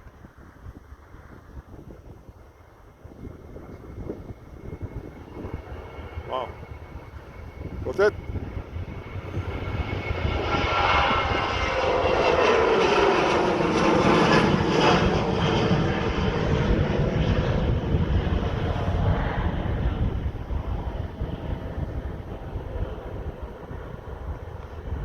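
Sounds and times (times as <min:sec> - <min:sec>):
jet engines at takeoff power: 0:00.0 - 0:25.0.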